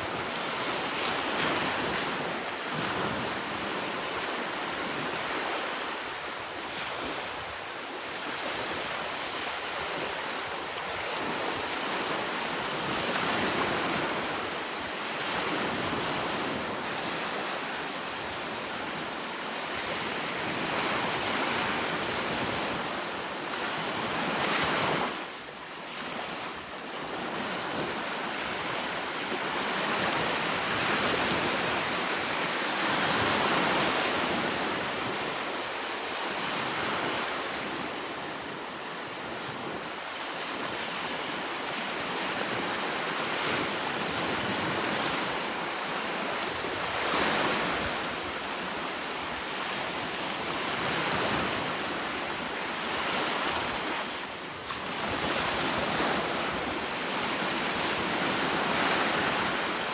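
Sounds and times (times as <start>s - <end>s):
sea waves breaking on shore: 0.0s - 59.9s.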